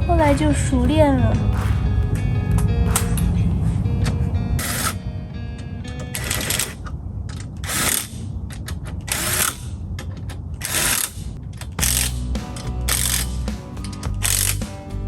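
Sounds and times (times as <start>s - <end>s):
background music: 0.0s - 6.8s, 11.8s - 15.0s
ratchet wrench clicking: 7.6s - 14.7s.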